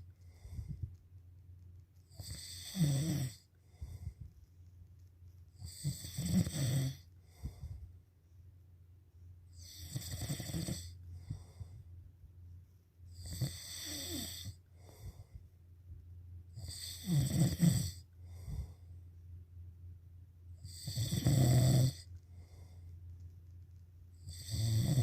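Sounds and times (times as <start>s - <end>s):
faint breath: 0.1s - 1.0s, 3.5s - 4.5s, 7.0s - 8.0s, 10.8s - 12.0s, 14.4s - 15.6s, 18.1s - 19.2s, 22.2s - 23.1s
loud snoring: 2.1s - 3.4s, 5.6s - 7.1s, 9.6s - 11.0s, 13.2s - 14.6s, 16.6s - 18.0s, 20.6s - 22.0s, 24.2s - 25.0s.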